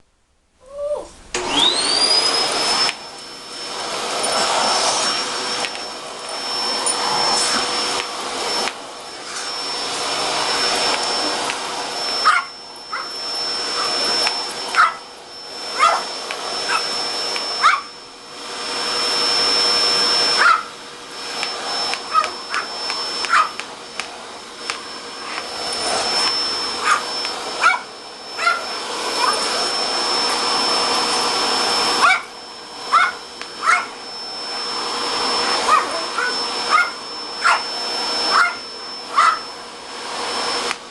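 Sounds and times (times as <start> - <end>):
vacuum cleaner whine: 0.7 - 40.9
dog barking and yipping: 12.1 - 18.0, 20.2 - 20.8, 21.9 - 23.6, 26.7 - 29.6, 32.0 - 32.3, 32.9 - 34.0, 35.5 - 39.5.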